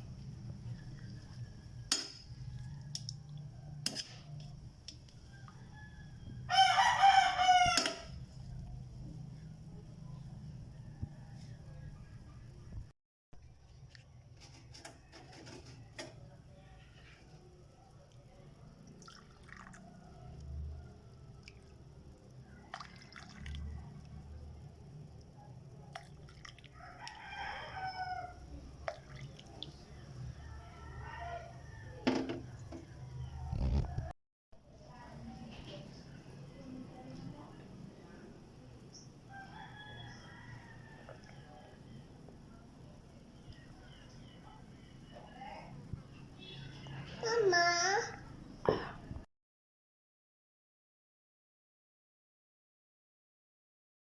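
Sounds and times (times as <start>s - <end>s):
rooster crowing: 5.2s - 8.2s, 26.7s - 28.6s, 30.3s - 33.6s, 38.9s - 41.8s
liquid dripping: 28.8s - 30.3s.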